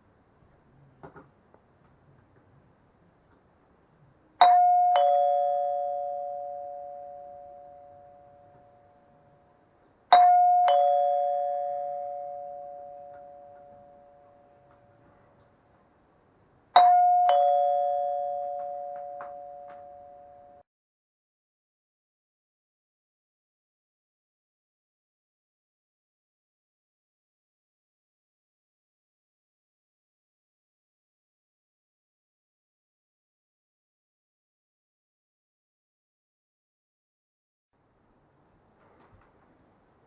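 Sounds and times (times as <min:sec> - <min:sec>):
bus stop-request ding-dong chime: 0:04.4 - 0:09.2, 0:10.1 - 0:15.0, 0:16.8 - 0:20.6.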